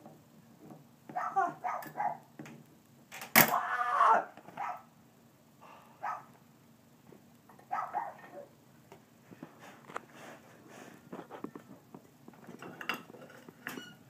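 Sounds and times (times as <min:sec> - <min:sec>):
dog barking: 0:01.1 - 0:02.2, 0:04.6 - 0:04.9, 0:06.0 - 0:06.3, 0:07.7 - 0:08.5.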